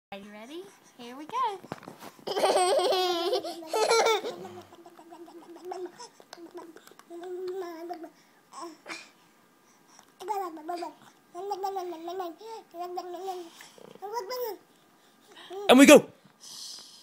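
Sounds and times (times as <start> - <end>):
baby babbling coos: 2.3 - 9.1, 10.2 - 14.6.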